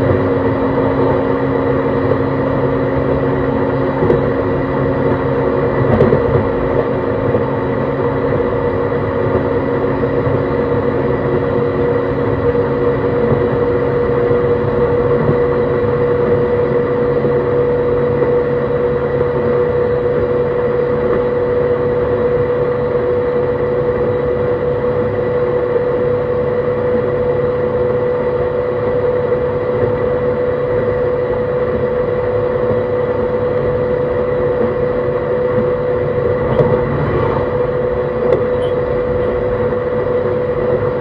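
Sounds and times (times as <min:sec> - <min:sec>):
electric motor hum and whine: 0:00.0 - 0:41.0
train wheels rumbling on rail: 0:35.5 - 0:39.8.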